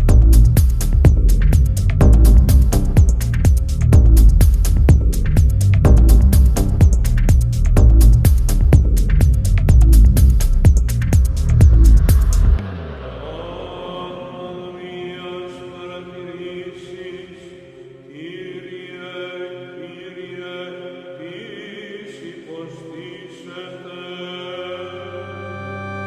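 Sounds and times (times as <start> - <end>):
synthesizer pads: 0.0 - 18.4.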